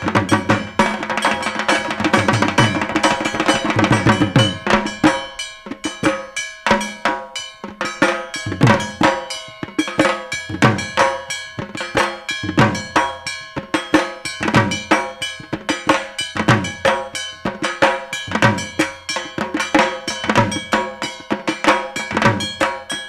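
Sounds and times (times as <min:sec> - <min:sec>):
struck metal plate ringing: 0:00.0 - 0:09.6
barrel drum played with sticks: 0:00.0 - 0:23.0.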